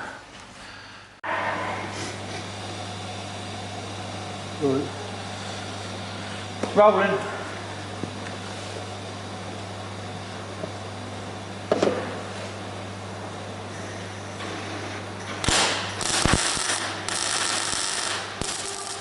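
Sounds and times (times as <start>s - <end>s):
electrical hum: 0.0s - 19.0s
welder crackling: 15.4s - 19.0s.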